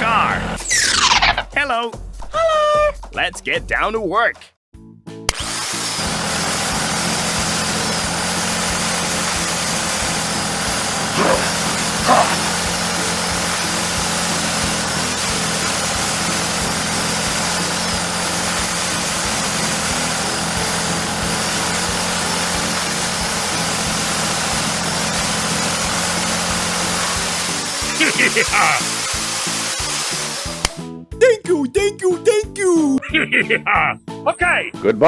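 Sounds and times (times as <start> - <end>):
small motor humming: 5.3 - 30.8.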